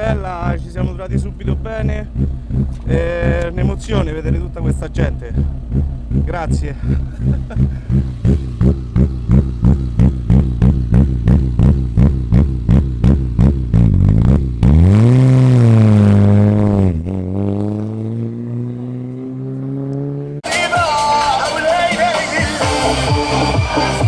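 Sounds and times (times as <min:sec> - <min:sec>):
rally car engine revving: 0:00.0 - 0:24.0
music: 0:20.4 - 0:24.0.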